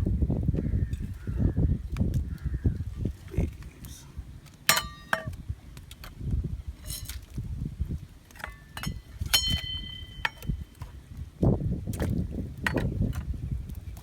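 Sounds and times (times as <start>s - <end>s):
handling noise: 4.4s - 6.1s
metal objects clinking: 4.7s - 5.3s, 8.4s - 10.5s.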